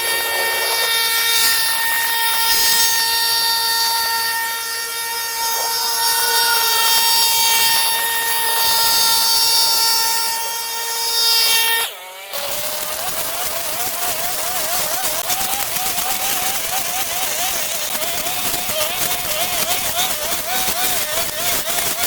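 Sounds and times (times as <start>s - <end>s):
power tool high whine: 0.0s - 22.0s.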